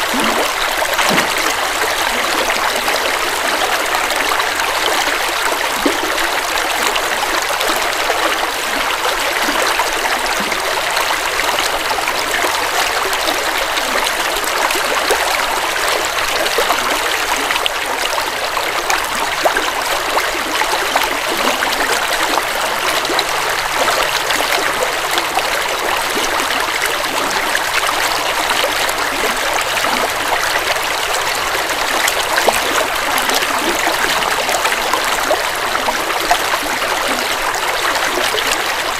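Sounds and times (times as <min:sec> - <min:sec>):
small water splashes: 0:00.0 - 0:07.0.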